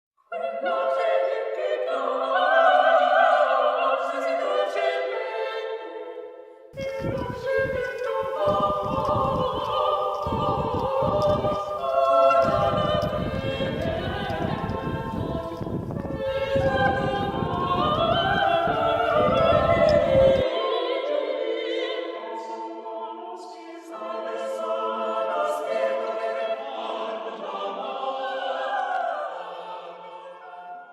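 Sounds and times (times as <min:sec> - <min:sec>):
choir singing operatically: 0:00.2 - 0:30.9.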